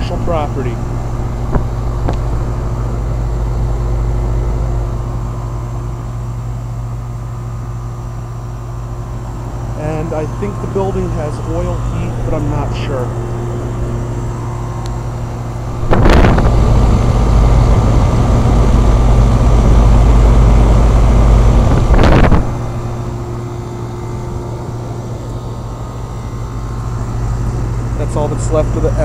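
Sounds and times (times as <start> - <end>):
air conditioner humming: 0.0 - 29.0
loud rushing noise: 10.2 - 18.8.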